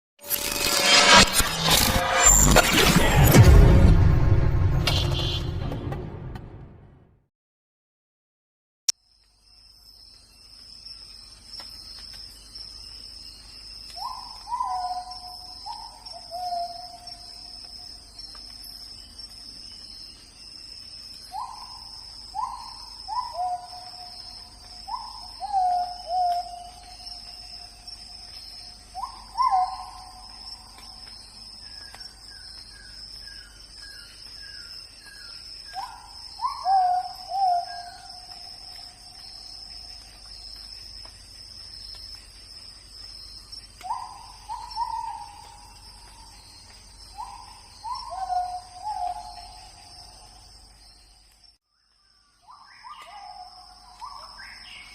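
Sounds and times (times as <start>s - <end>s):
high insect drone: 9.4s - 51.5s.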